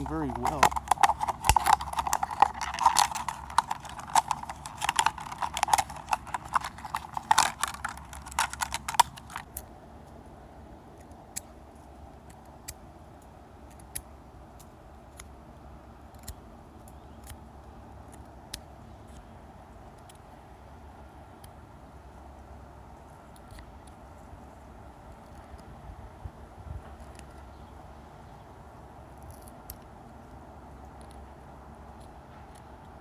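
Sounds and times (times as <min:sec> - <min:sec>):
knife sawing through plastic bottle: 0:00.3 - 0:09.3.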